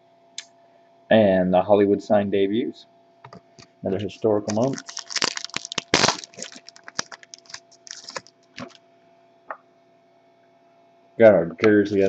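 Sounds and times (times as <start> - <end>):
trading cards flipped by hand: 5.8 - 8.8.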